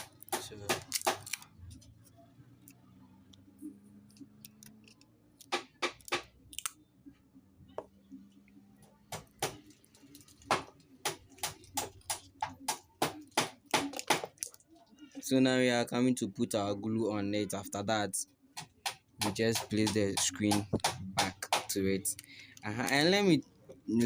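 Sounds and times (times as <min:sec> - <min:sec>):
small parts and tools clicking: 0:00.0 - 0:06.8, 0:08.8 - 0:15.0, 0:18.6 - 0:24.0.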